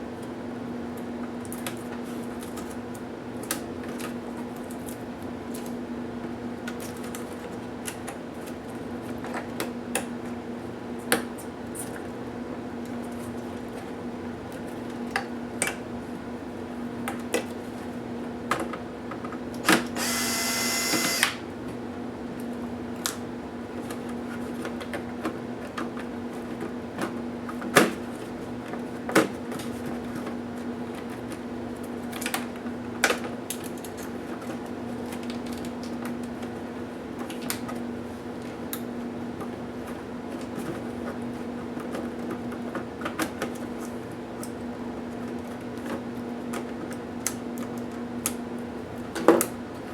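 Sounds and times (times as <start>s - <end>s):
power screwdriver whirring: 19.7s - 21.4s.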